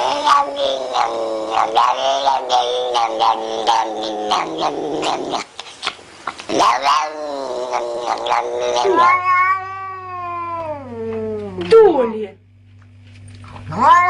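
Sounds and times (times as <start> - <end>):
cat yowling: 0.0 - 5.3, 6.6 - 11.4, 13.7 - 14.0.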